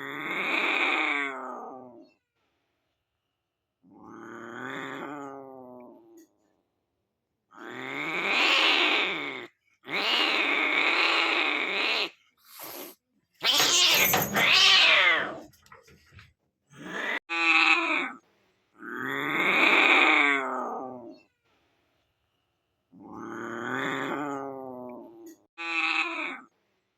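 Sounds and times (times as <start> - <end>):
animal crying out: 7.6 - 12.1, 13.4 - 15.5, 16.8 - 18.2.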